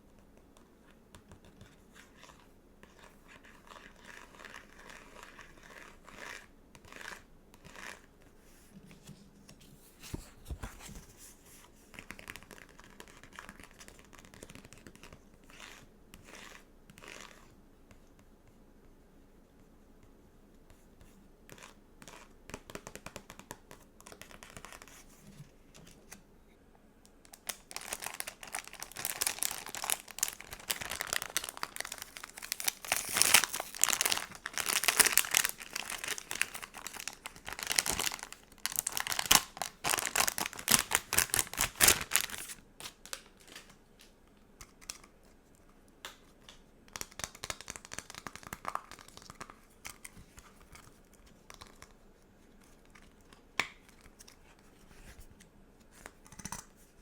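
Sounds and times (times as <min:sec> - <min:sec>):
sticker sheets crinkling: 0:27.3 - 0:44.1.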